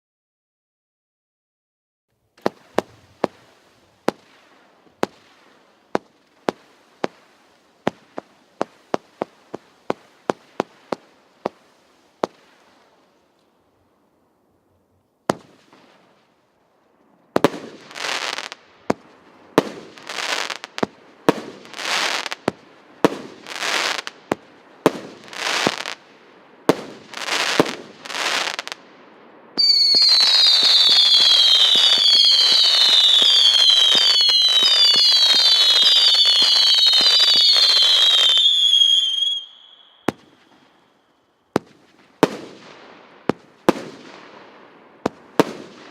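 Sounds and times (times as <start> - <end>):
fireworks reports: 2.4 - 13.0, 29.6 - 44.4
hissing crackle: 15.3 - 42.2
fireworks whistles falling in pitch: 21.6 - 22.6, 29.6 - 41.7.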